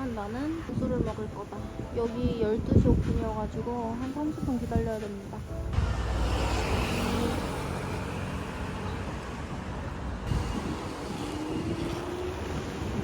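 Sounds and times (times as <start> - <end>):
street traffic rumble: 0.0 - 13.0
engine tone rising: 5.8 - 13.0.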